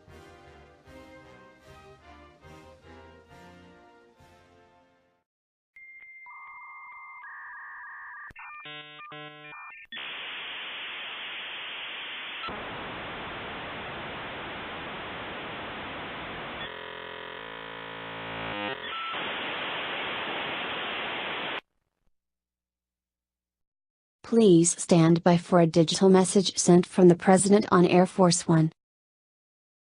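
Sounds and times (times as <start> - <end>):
pulsing stepped data tones: 7.6 - 12.6
buzzing tones: 8.6 - 20.4
static hiss: 9.9 - 21.6.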